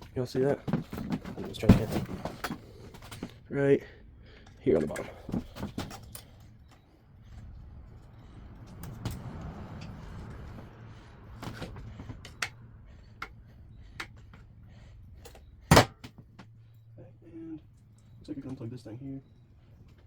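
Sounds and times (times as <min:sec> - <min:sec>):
low hum: 0:05.2 - 0:18.4
loud metal clunk: 0:15.7 - 0:16.2.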